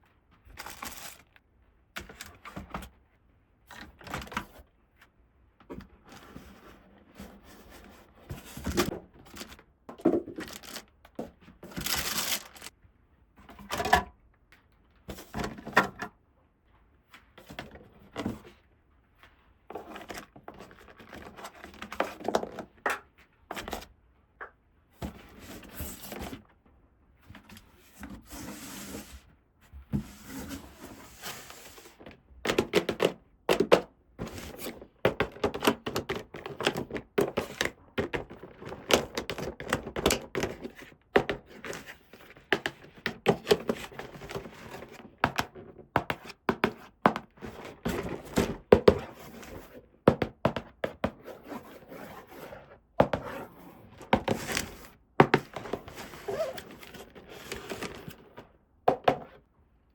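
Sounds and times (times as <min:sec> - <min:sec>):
soft rustling: 0:11.8 - 0:12.7.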